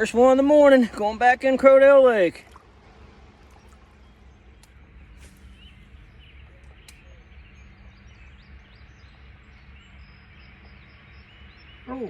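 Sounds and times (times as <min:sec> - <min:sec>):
faint bird chirps: 0:03.4 - 0:12.0.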